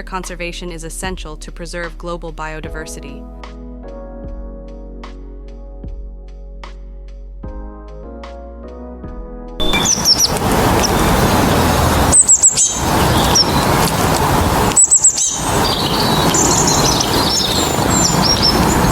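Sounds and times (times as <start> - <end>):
birds chirping: 9.6 - 18.9
steady rush of outdoor noise: 9.6 - 18.9.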